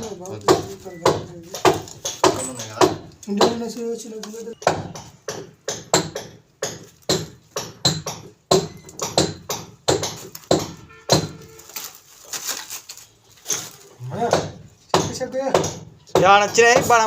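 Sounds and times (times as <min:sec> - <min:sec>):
hammer striking metal: 0:00.5 - 0:03.6, 0:04.6 - 0:11.5.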